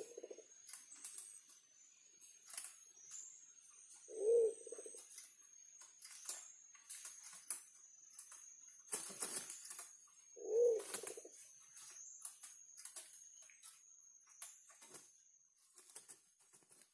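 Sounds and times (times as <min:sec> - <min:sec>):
pigeon cooing: 0:00.0 - 0:00.5, 0:04.1 - 0:05.0, 0:10.4 - 0:11.4.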